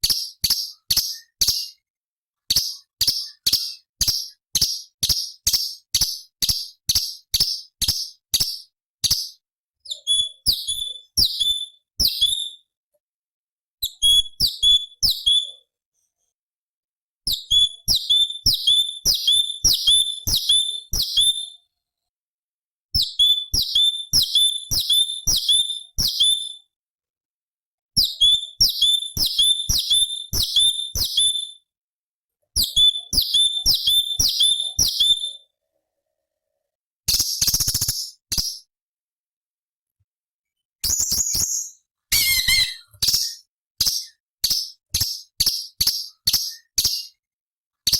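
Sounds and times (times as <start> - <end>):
bird singing high falling notes: 42.1 - 42.9
harsh rasping bird call: 42.1 - 42.9.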